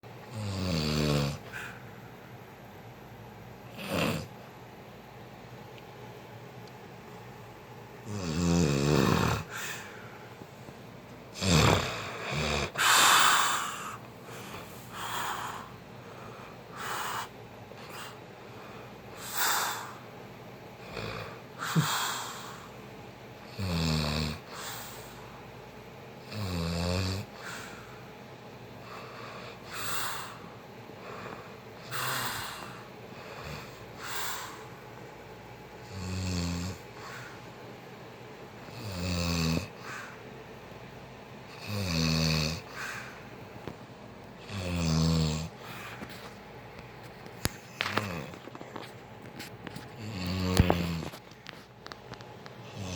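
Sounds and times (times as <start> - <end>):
person snoring: 0.3 - 1.8, 3.7 - 4.3, 8.0 - 10.0, 11.3 - 15.8, 20.8 - 22.7, 23.5 - 25.2, 26.2 - 27.8, 31.2 - 34.6, 35.9 - 37.4, 38.7 - 40.2, 41.6 - 43.2, 44.4 - 46.0, 47.6 - 48.5, 50.0 - 51.2, 52.6 - 52.9
quiet breathing: 1.3 - 2.5, 9.0 - 10.9, 11.8 - 22.9, 24.5 - 25.6, 27.2 - 35.3, 36.7 - 37.8, 39.7 - 40.5, 42.6 - 43.8, 45.4 - 52.9.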